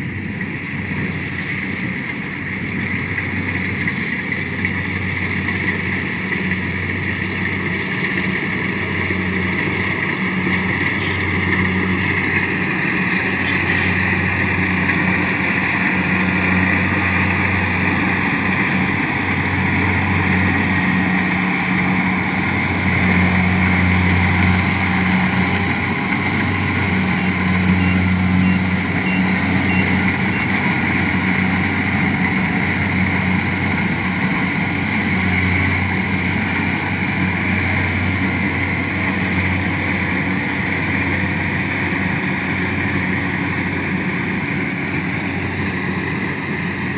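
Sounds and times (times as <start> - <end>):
harvesting machine engine humming: 0.0 - 46.9.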